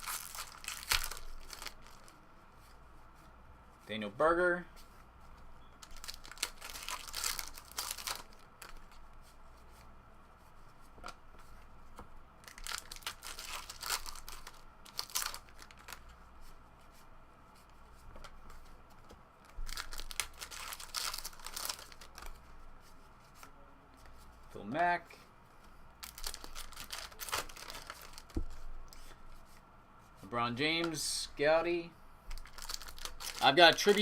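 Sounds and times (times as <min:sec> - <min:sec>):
wrappers ripping and crinkling: 0:00.0 - 0:02.1, 0:05.8 - 0:08.8, 0:12.4 - 0:16.0, 0:19.6 - 0:22.3, 0:26.0 - 0:28.4, 0:32.4 - 0:34.0.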